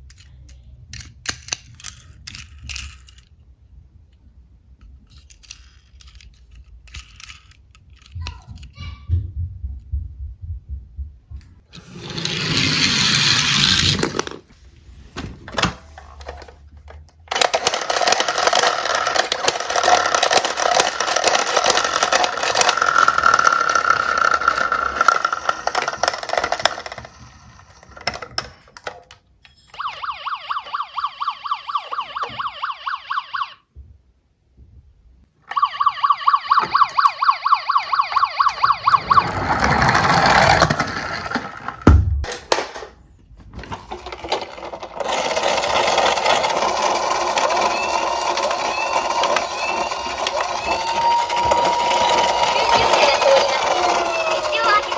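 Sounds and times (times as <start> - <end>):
toy electronic sirens: 17.3 - 27.1, 29.7 - 33.7, 35.5 - 40.7, 45.4 - 54.9
fast pulsing electronic siren: 29.8 - 33.6, 35.5 - 39.5, 47.5 - 54.9.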